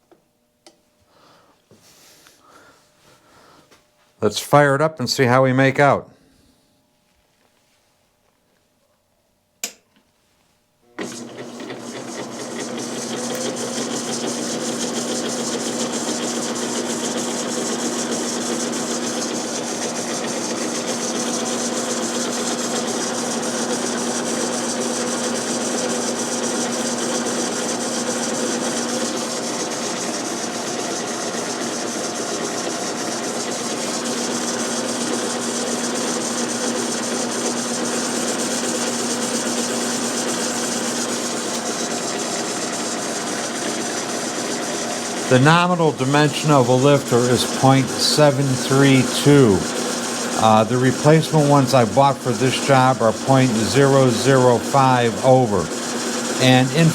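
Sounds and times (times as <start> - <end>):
metal lathe humming: 11.0 - 56.9.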